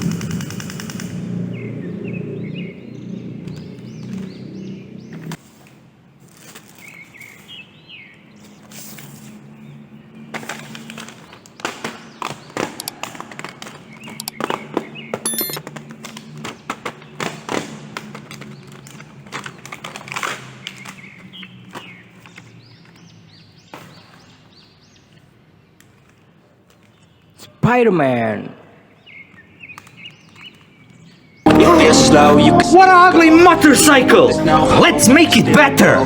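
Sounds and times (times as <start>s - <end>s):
plastic toy pieces clicking: 12.7s - 13.2s
bird chirps: 13.9s - 15.6s.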